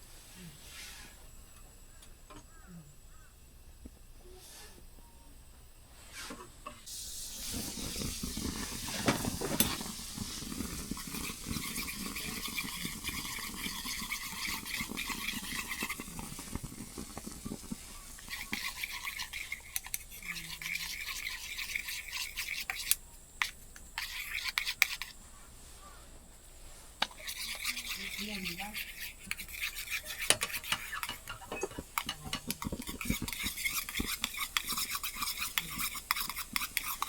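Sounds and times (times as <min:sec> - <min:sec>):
utensil scraping in metal pan: 0:06.0 - 0:06.5, 0:07.2 - 0:26.0, 0:26.7 - 0:37.0.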